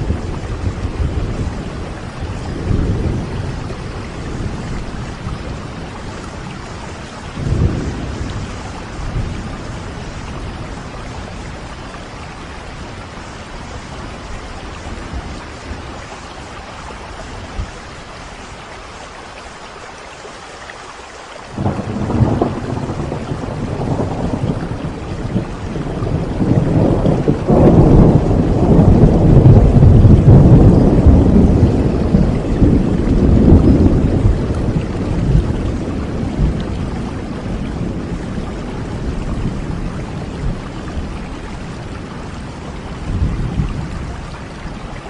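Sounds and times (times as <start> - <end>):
thunder rumbling: 0.0 - 18.5, 21.5 - 45.0
heavy rain: 0.0 - 45.0
loud thunderclap: 7.4 - 11.3, 21.6 - 41.2.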